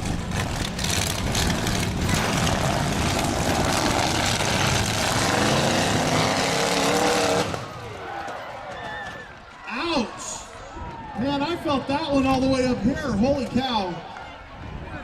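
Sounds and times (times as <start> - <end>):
engine revving in rising whine: 0.0 - 8.0
truck engines revving hard: 0.0 - 9.2.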